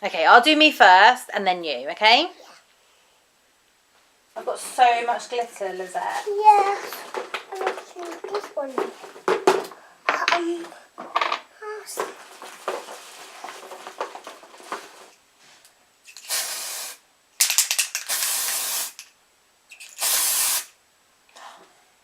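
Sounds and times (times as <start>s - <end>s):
faint handling rustle and clicks: 11.9s - 16.3s
aerosol spray can spraying: 16.1s - 17.0s, 17.6s - 19.1s, 19.8s - 20.8s.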